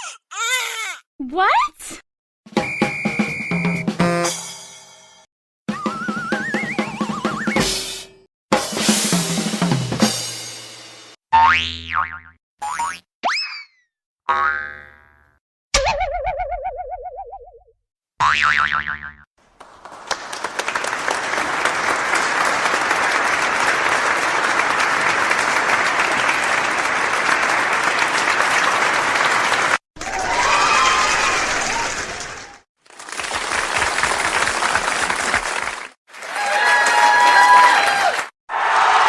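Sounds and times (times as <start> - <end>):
audience applauding: 19.6 - 38.3
crowd noise: 20.6 - 30.4, 36.1 - 38.3
voices cheering: 21.0 - 32.6, 36.1 - 39.0.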